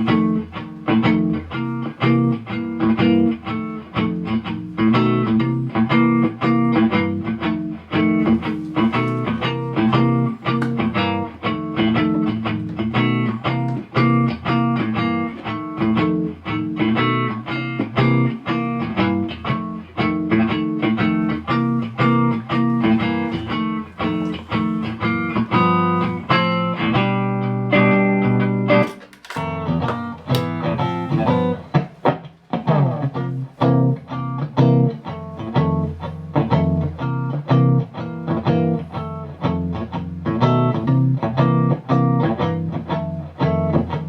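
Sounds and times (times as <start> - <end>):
electric guitar single-note run: 20.3 - 31.7.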